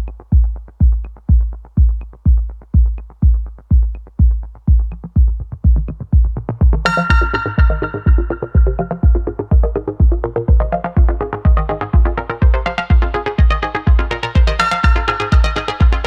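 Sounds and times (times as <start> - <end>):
deep kick drum: 0.0 - 16.0
electronic background music: 0.0 - 16.0
bright synth chord: 6.9 - 9.4.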